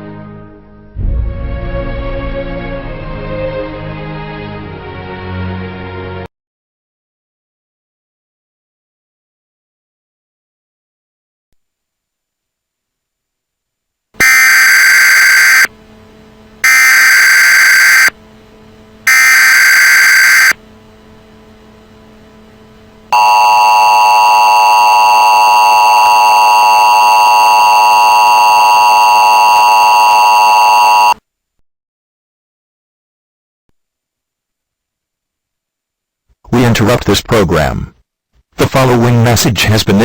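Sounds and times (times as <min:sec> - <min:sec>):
screeching digital bursts: 0:14.2 - 0:15.7, 0:16.6 - 0:18.1, 0:19.1 - 0:20.6
two-tone attention signal: 0:14.2 - 0:15.7, 0:16.6 - 0:18.1, 0:19.1 - 0:20.6, 0:23.2 - 0:31.2.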